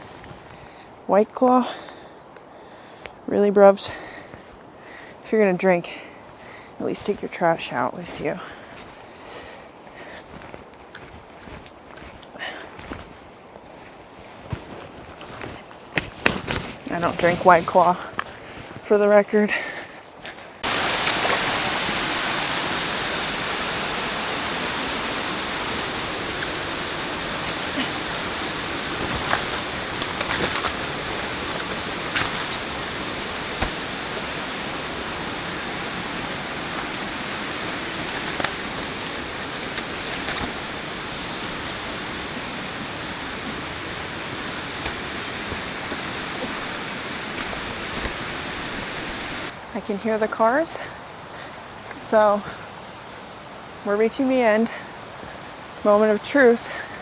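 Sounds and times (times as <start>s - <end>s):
rushing water: 0.0s - 2.2s, 17.0s - 57.0s.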